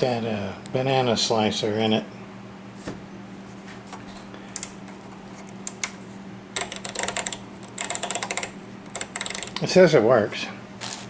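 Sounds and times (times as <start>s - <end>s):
steady low hum: 0.0s - 11.0s
clicks and knocks of handling: 6.6s - 9.7s.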